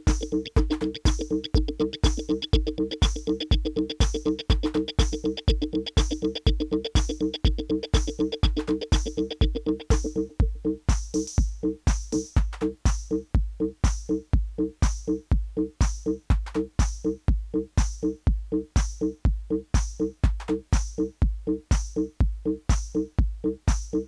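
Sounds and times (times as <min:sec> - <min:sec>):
open hi-hat: 0:00.0 - 0:10.3, 0:10.9 - 0:14.2
synth bass figure: 0:00.0 - 0:10.8
kick drum: 0:00.0 - 0:24.0.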